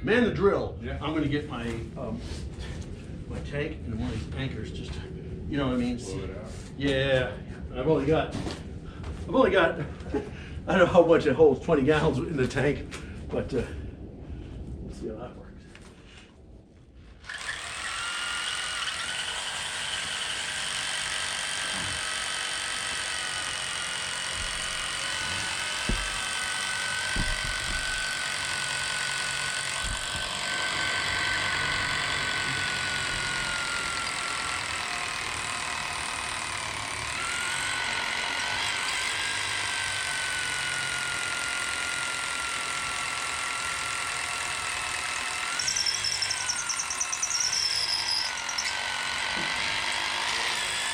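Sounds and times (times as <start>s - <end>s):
motor whining: 17.2s - 50.9s.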